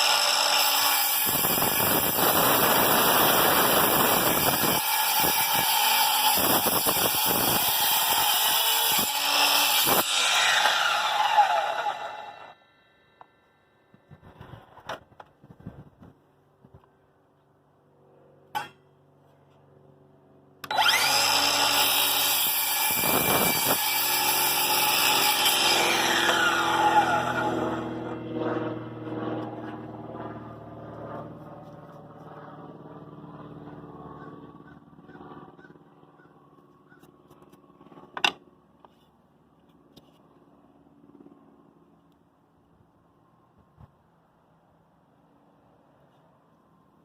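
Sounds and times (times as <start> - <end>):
saw blade winding down: 0.0 - 13.3, 20.6 - 28.2
miter saw cutting: 0.0 - 13.4, 20.6 - 31.4.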